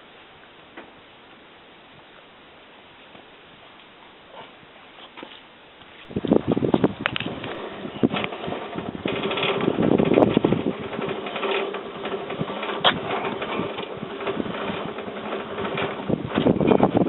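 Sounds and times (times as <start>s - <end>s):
sawmill motor humming: 6.2s - 17.0s
mechanical rattle: 6.3s - 17.0s.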